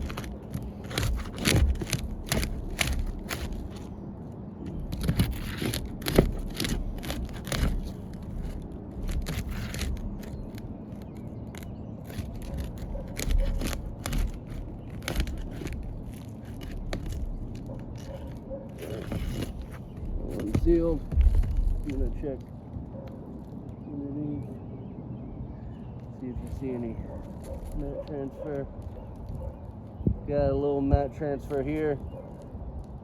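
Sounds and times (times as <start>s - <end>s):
roof shingles scraping and tearing: 0.0s - 22.6s, 26.3s - 29.8s.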